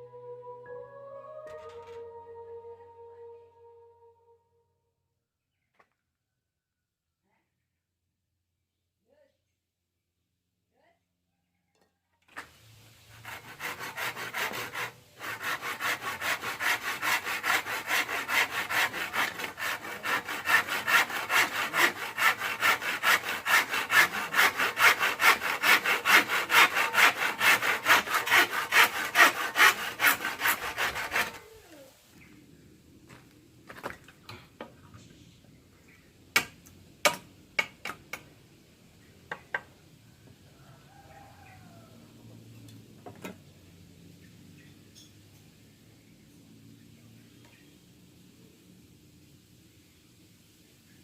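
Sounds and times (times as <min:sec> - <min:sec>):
hand saw cutting bamboo: 0:13.1 - 0:31.6.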